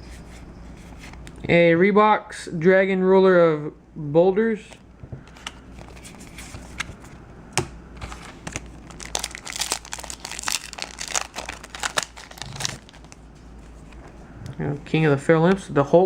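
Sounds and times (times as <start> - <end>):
foil wrapper crinkling and tearing: 8.0 - 13.2.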